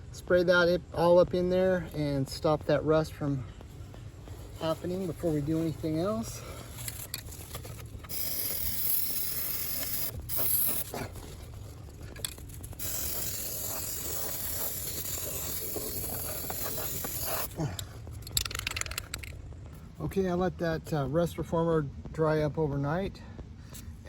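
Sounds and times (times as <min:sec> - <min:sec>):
aerosol can spraying: 0:08.1 - 0:10.9, 0:12.5 - 0:17.6.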